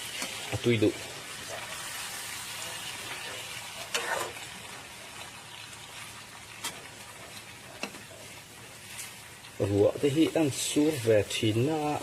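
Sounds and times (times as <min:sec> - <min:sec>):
steady hissing noise: 0:07.4 - 0:12.0.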